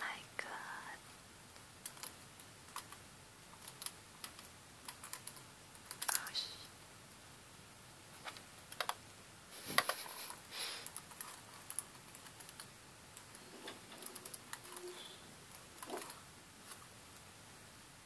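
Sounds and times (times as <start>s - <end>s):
computer keyboard typing: 1.6s - 6.3s, 8.3s - 9.0s, 9.8s - 16.2s.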